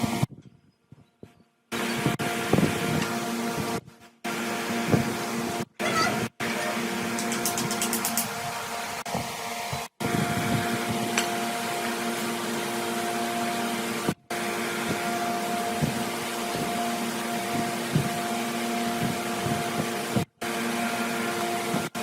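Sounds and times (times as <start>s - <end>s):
electric motor humming: 1.7s - 22.0s.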